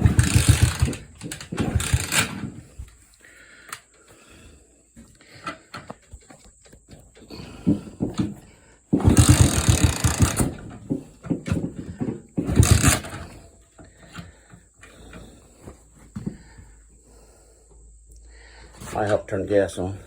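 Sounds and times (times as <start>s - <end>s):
small engine chattering: 0.0s - 2.8s, 5.3s - 15.3s
clunks of starting effort: 0.0s - 20.0s.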